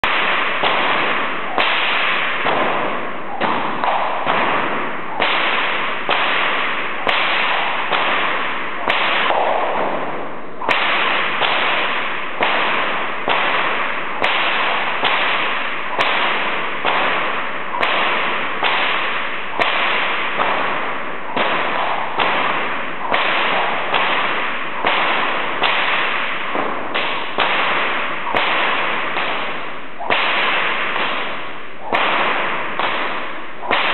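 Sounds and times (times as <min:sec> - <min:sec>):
bullwhip cracking: 0:00.0 - 0:33.9.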